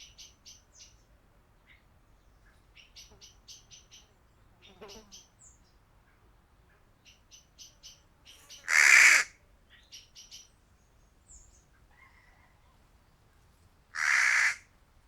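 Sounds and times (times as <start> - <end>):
crow cawing: 8.7 - 9.3, 14.0 - 14.6.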